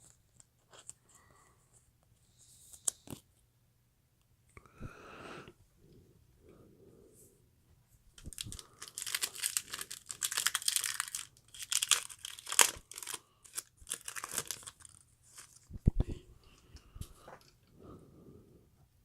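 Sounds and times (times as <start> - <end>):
foil wrapper tearing and crinkling: 8.2 - 15.6.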